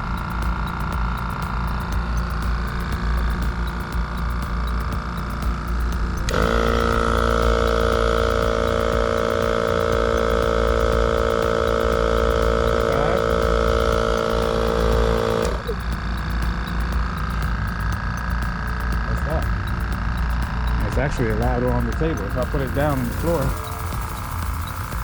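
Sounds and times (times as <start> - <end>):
air compressor motor humming: 0.0 - 25.0.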